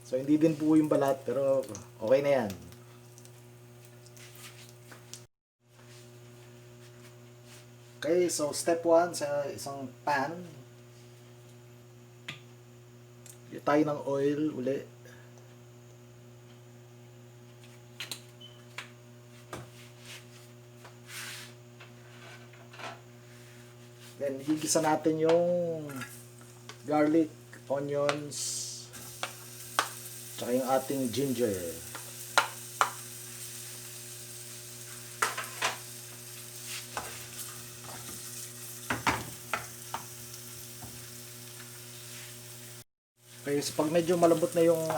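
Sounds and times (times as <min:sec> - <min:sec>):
low electrical hum: 0:00.0 - 0:44.9
soft hiss: 0:24.2 - 0:38.8, 0:40.2 - 0:44.9
food sizzling in hot oil: 0:25.8 - 0:27.8, 0:28.5 - 0:44.9.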